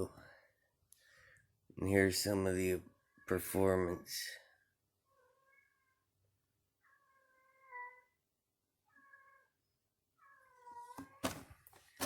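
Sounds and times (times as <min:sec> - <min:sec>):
cat meowing faintly: 0:06.8 - 0:08.2, 0:10.2 - 0:11.4.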